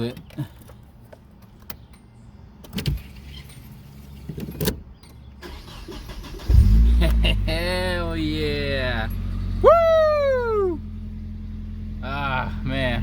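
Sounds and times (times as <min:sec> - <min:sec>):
starter motor cranking engine: 0:05.4 - 0:06.9.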